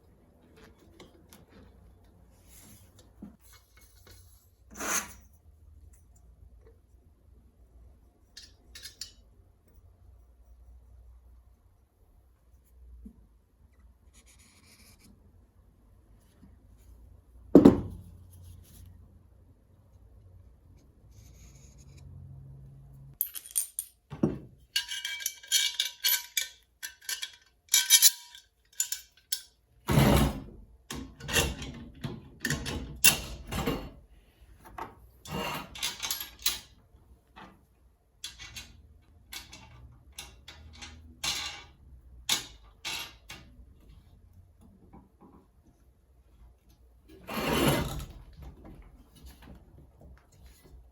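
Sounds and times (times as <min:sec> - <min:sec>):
metallic clinks and knocks: 0:23.2 - 0:29.6.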